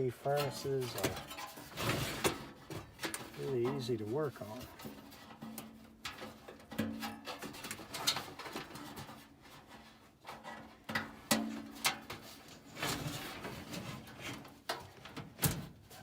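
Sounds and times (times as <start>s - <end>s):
knocks and scrapes on sheet metal: 0.0s - 16.0s.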